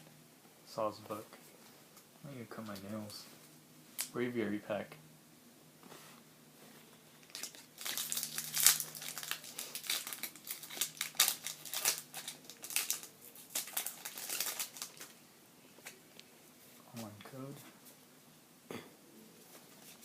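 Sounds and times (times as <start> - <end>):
foil wrapper crinkling: 7.2 - 15.2.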